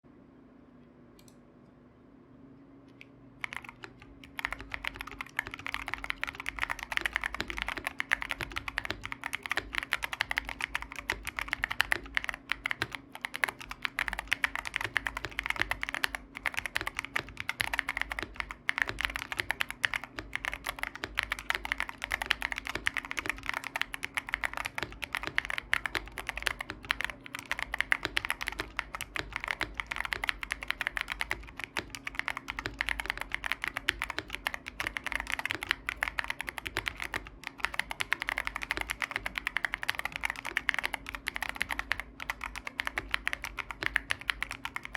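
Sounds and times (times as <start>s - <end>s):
fast typing on keyboard: 3.4s - 44.9s.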